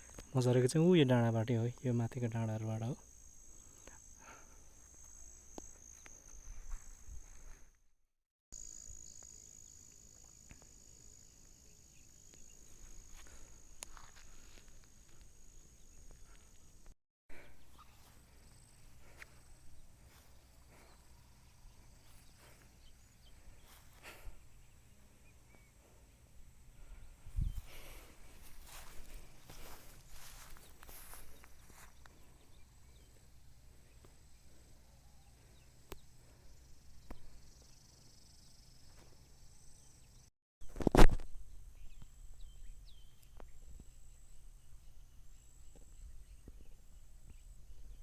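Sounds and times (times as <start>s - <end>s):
faint insect hum: 0.0s - 7.8s, 8.6s - 48.0s
footsteps on a trail: 4.8s - 7.8s, 12.4s - 16.7s, 17.7s - 24.5s, 27.3s - 32.6s
faint high chirps: 15.6s - 25.8s
falling bird chirps: 17.5s - 18.6s.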